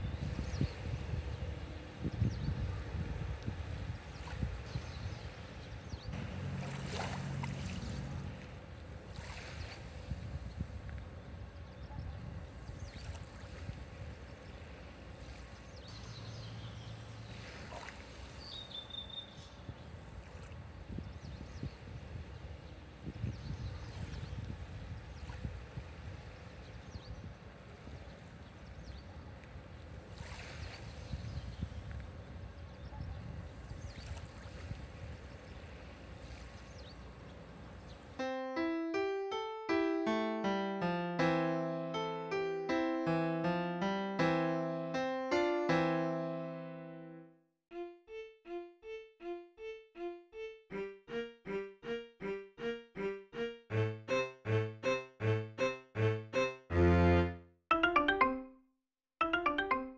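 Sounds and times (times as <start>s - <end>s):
wind on microphone: 0.0s - 14.3s, 19.6s - 35.3s
sea waves washing on beach: 6.2s - 10.3s, 17.0s - 18.5s
small waves lapping on shore: 6.2s - 11.1s, 12.4s - 20.9s, 27.4s - 32.2s, 33.4s - 38.0s
electric piano music: 38.2s - 58.6s, 59.2s - 59.9s.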